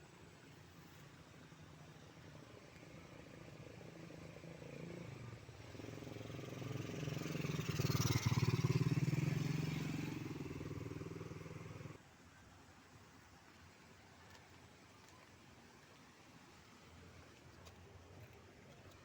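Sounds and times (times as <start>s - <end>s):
motor engine droning: 4.6s - 12.0s.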